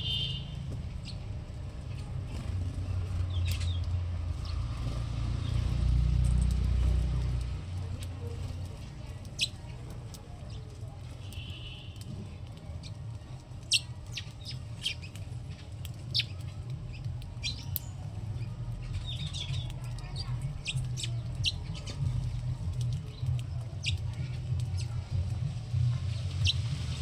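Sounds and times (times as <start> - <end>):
steady low rumble: 0.0 - 11.4, 12.0 - 27.0
small birds chirping: 0.0 - 27.0.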